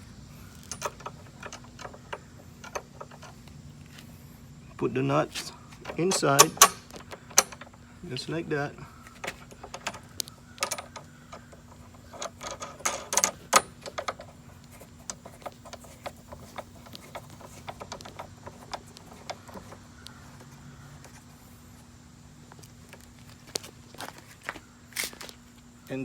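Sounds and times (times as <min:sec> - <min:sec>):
metal clicks of bolt fitting: 0:00.5 - 0:03.5, 0:05.8 - 0:07.8, 0:09.1 - 0:14.4.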